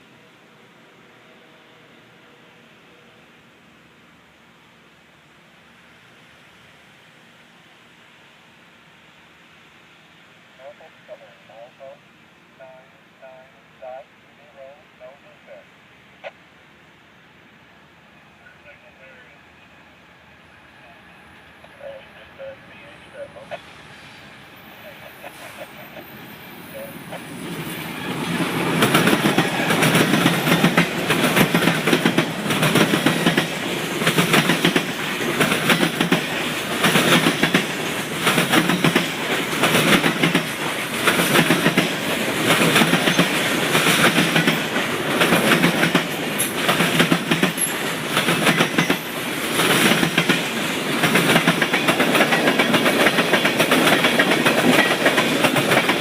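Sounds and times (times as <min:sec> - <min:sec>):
train wheels clacking over rail joints: 0:27.5 - 0:56.0.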